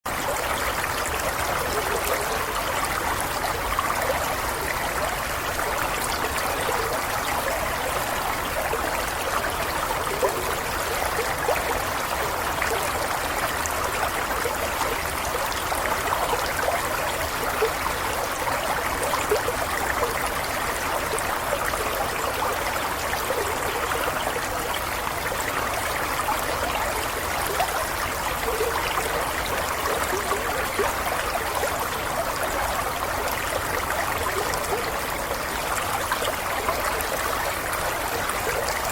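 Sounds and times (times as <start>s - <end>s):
stream trickling over stones: 0.1s - 38.9s.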